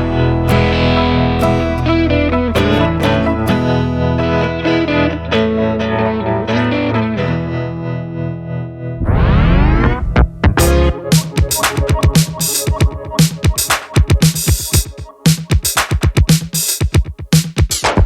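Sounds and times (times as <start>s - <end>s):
steady bass: 0.0s - 6.0s, 8.9s - 12.2s
guitar with effects: 0.0s - 18.0s
synthesizer sweep: 8.9s - 16.8s
electronic music with held chords: 9.0s - 18.0s.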